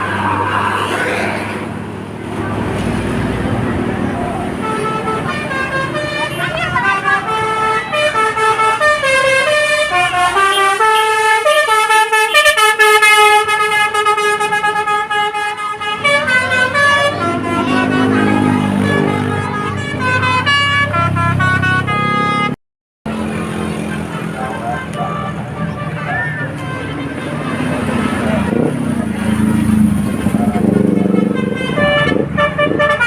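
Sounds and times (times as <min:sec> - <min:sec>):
bus engine rumbling: 0:00.0 - 0:33.0
multi-tone musical air horn: 0:04.5 - 0:22.6, 0:30.4 - 0:33.0.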